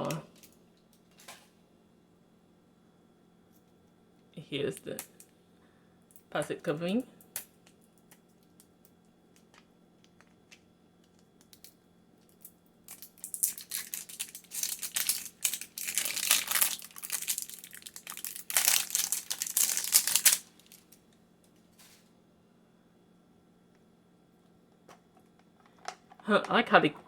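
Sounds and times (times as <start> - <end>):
plastic wrapping crinkling and tearing: 12.9 - 21.0.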